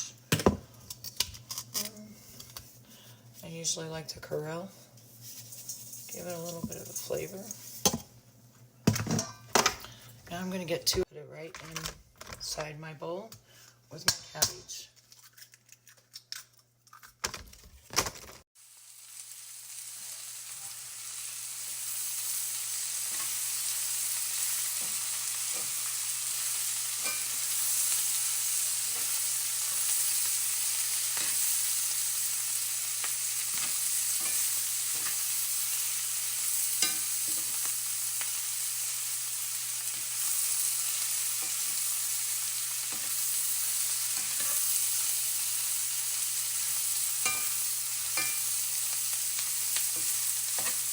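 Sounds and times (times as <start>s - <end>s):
cabbage sizzling in a pan: 18.6s - 50.9s.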